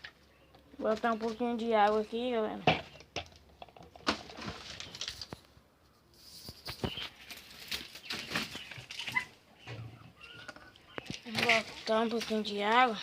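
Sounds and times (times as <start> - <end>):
birdcage rustling and clicking: 3.0 - 5.5, 6.2 - 9.3
bird fluttering wings: 6.4 - 9.2.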